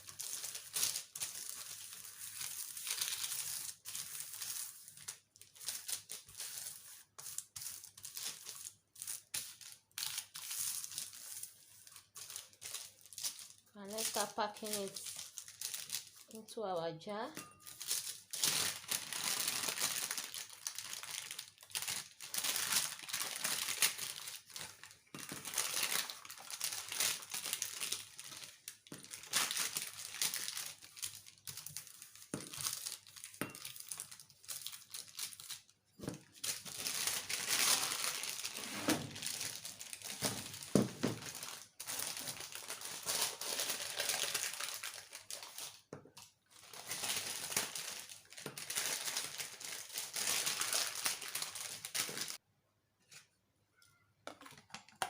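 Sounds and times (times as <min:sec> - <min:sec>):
crinkling and rustling: 0:17.2 - 0:52.4.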